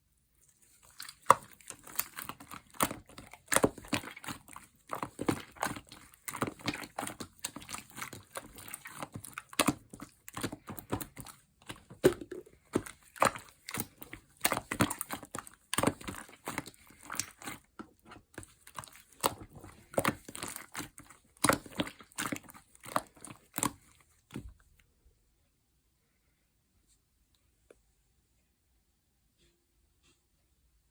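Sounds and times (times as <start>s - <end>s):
slime being kneaded by hand: 0.3s - 24.8s.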